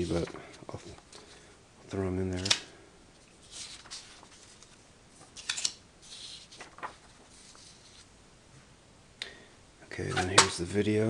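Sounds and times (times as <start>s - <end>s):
papers rustling: 0.0s - 8.1s.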